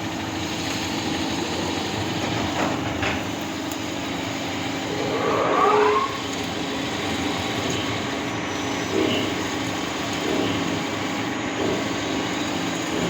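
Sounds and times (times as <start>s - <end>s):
lathe machine hum: 0.0s - 13.0s
pitch-shifting machine whine: 4.8s - 6.2s.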